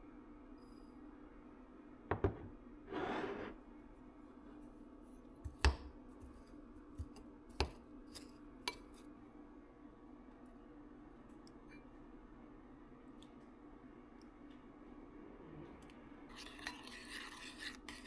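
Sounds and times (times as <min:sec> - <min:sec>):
kitchen knocks and clinks: 0:02.1 - 0:02.5.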